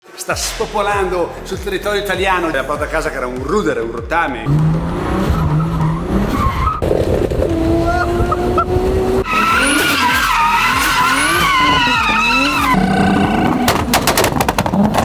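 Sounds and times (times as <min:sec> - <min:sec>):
car engine revving: 0:00.7 - 0:15.0
tyres squealing: 0:04.3 - 0:15.0.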